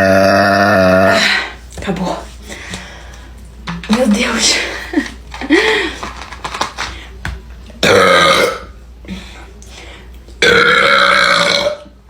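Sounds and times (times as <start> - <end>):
woman belching: 0.0 - 1.2, 7.8 - 8.7, 10.4 - 11.9.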